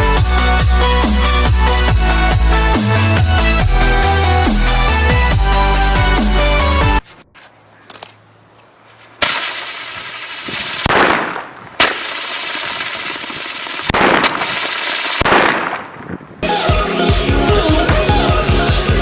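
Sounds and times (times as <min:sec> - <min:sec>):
sharp crack: 0:07.8 - 0:16.3
firework rockets hissing and crackling: 0:09.2 - 0:16.1.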